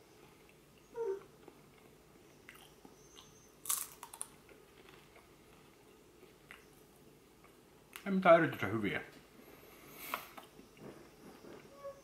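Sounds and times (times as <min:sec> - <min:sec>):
chewing crunches: 0:01.4 - 0:05.6
crisp crunch of biting: 0:03.6 - 0:05.2.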